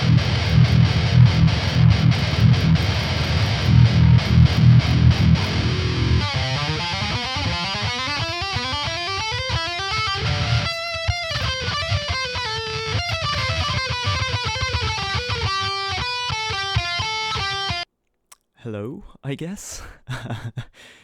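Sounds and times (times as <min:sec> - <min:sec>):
electric guitar metal riff: 0:00.0 - 0:17.8.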